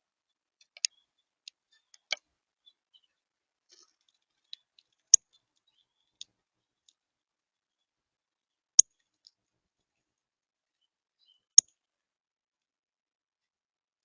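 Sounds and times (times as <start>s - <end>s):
birds pecking and cracking seed: 0.6s - 7.0s.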